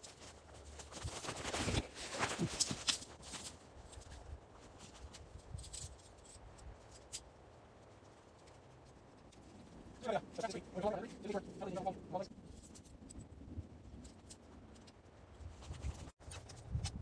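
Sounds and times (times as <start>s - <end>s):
faint rustling: 0.0s - 17.0s
light clinks and clicks: 15.6s - 17.0s.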